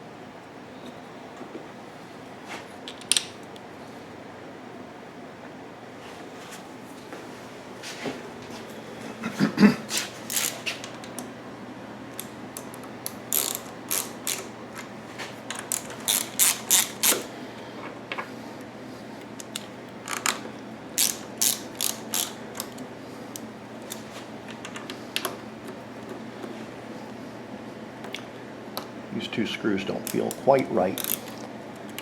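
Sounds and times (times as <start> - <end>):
ratchet wrench clicking: 10.3 - 10.6, 13.3 - 14.5, 15.5 - 17.3, 21.0 - 22.8, 31.0 - 31.3.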